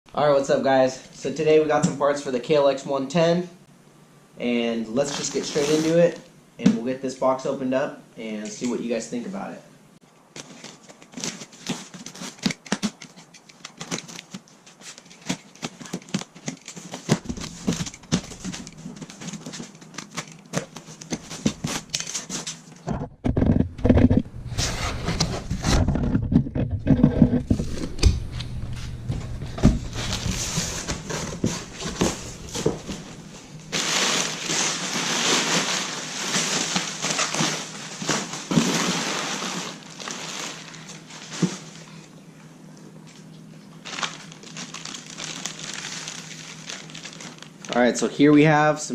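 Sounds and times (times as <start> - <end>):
packaging crinkling and clicking: 10.4 - 22.8, 43.8 - 47.8.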